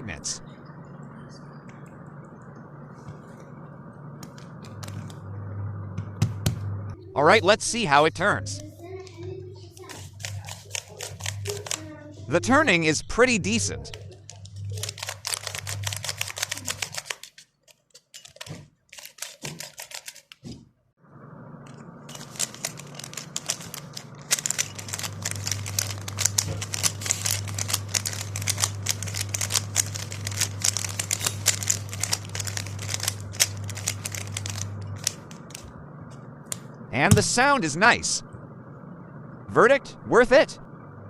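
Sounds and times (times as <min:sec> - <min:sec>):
plastic speed cube clicking: 0:14.7 - 0:17.4, 0:18.3 - 0:20.4, 0:22.3 - 0:35.2.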